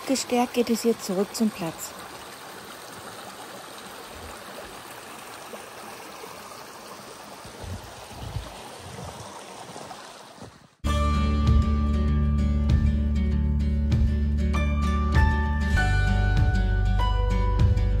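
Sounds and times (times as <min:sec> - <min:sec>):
stream flowing: 0:00.0 - 0:10.8
music: 0:10.8 - 0:18.0.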